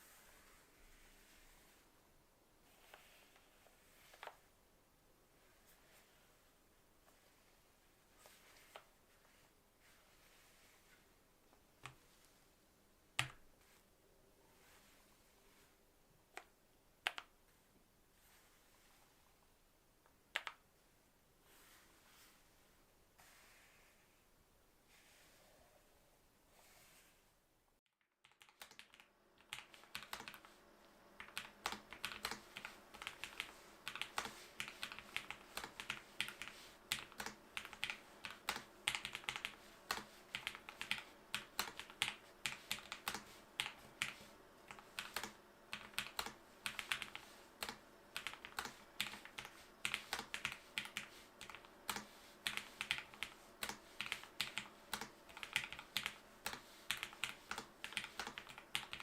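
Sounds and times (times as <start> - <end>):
keyboard typing clicks: 16.3 - 17.3, 28.2 - 30.5, 31.2 - 59.0.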